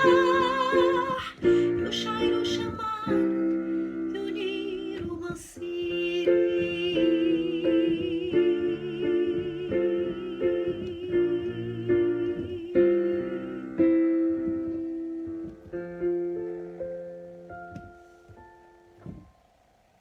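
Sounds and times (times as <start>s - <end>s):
keyboard chords: 6.2s - 20.0s.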